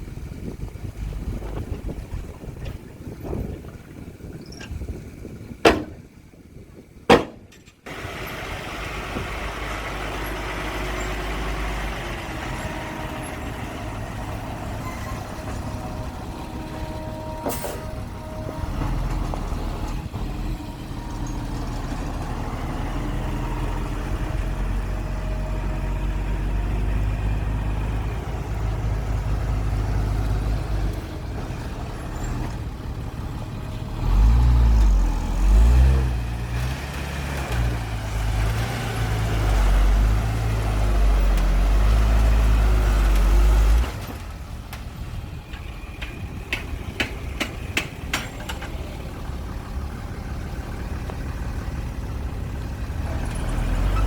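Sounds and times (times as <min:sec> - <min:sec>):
heavy diesel engine running: 0:00.0 - 0:54.0
sharp knocks: 0:05.6 - 0:06.1, 0:07.1 - 0:07.7.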